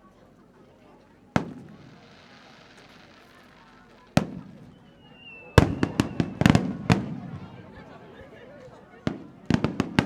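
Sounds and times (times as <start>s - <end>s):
firework whistle: 1.4s - 7.1s
fireworks bangs: 1.4s - 7.6s, 9.1s - 10.0s.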